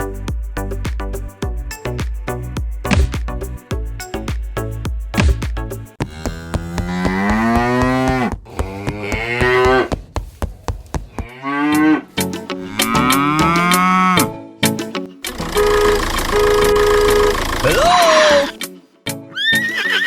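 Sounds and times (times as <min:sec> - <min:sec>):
steady clicking beat: 0:00.0 - 0:10.2, 0:12.2 - 0:18.6
cattle mooing: 0:12.7 - 0:14.3, 0:15.4 - 0:18.6.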